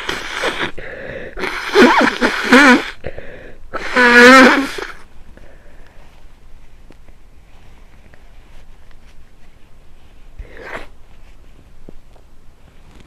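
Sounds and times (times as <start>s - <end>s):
person sneezing: 0.0s - 5.0s, 10.4s - 11.0s.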